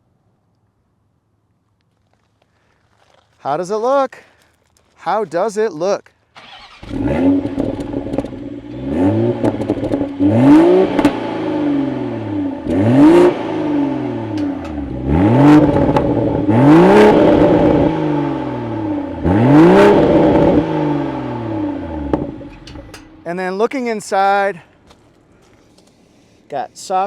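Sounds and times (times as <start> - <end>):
car engine revving: 6.4 - 23.3.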